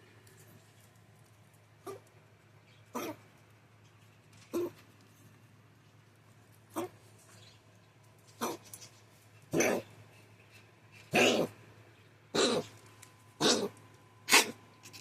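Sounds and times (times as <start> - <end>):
pet coughing: 11.1 - 11.5, 12.4 - 12.7.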